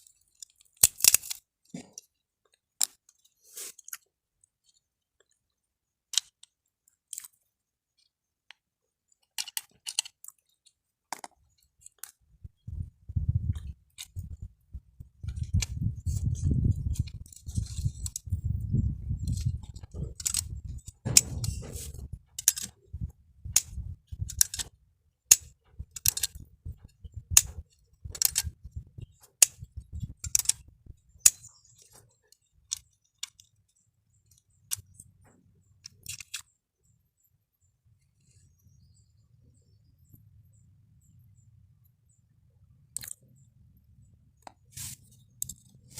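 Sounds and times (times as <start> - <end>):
small plastic and metal parts clinking: 0.0 - 5.4, 9.1 - 12.3, 15.2 - 36.5, 44.8 - 45.9.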